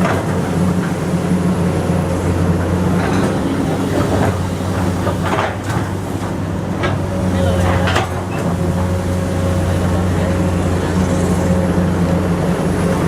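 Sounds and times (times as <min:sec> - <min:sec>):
excavator diesel engine drone: 0:00.0 - 0:13.0
machine knocks and rattles: 0:02.6 - 0:09.0.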